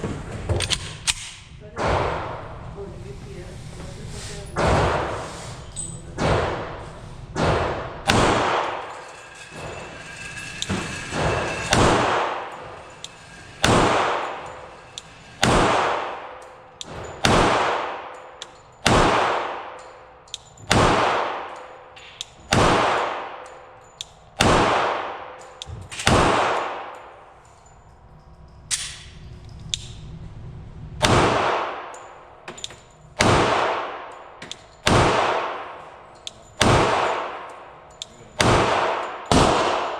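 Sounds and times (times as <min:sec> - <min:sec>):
pistol shots echoing: 0:07.4 - 0:08.9, 0:13.6 - 0:14.4, 0:15.4 - 0:20.0, 0:20.7 - 0:23.6, 0:24.4 - 0:27.1, 0:31.0 - 0:32.0, 0:33.2 - 0:36.0, 0:36.6 - 0:39.9.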